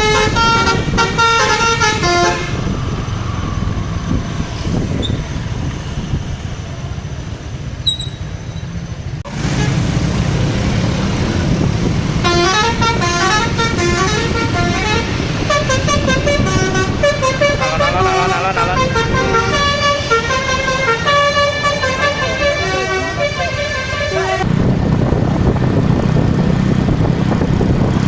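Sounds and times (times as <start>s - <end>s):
multi-tone bus air horn: 0.0s - 2.8s, 12.2s - 24.5s
bus engine and road noise: 0.0s - 28.0s.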